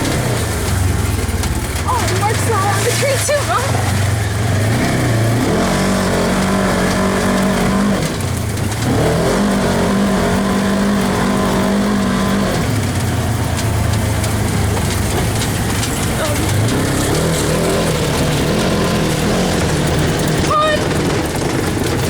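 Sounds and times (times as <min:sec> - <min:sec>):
vehicle engine running: 0:00.0 - 0:22.0.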